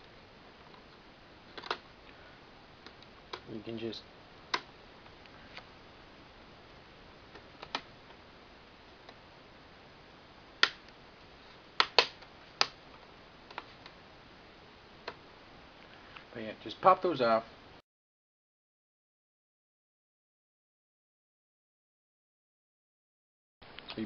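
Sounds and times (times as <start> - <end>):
plastic clips snapping: 11.8 - 12.8.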